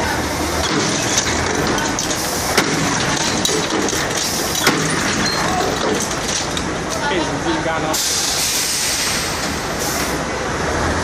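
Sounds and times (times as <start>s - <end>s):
diesel engine running: 0.0s - 11.0s
work site din: 0.0s - 11.0s
sharp metallic knocks: 0.6s - 7.1s.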